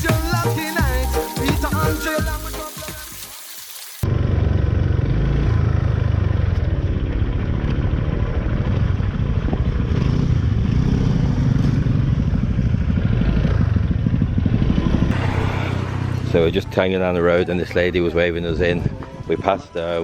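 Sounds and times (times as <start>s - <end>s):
motorbike engine: 4.0s - 17.4s
low rumble: 14.2s - 17.3s.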